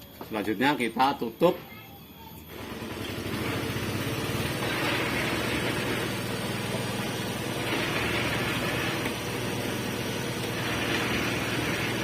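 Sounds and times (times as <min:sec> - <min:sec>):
engine idling: 0:02.5 - 0:12.0.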